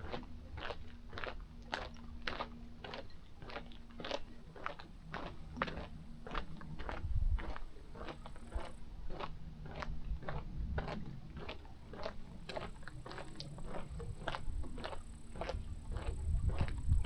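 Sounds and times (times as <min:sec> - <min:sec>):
crunching footsteps: 0:00.0 - 0:17.0
low rumble: 0:05.0 - 0:17.0.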